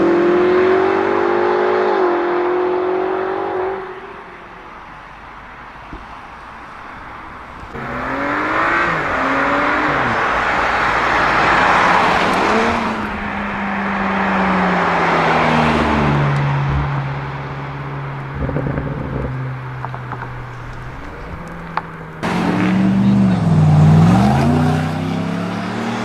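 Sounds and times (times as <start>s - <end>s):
car engine accelerating through upshifts: 0.0s - 4.2s, 7.5s - 26.0s
exhaust crackles: 6.7s - 26.0s.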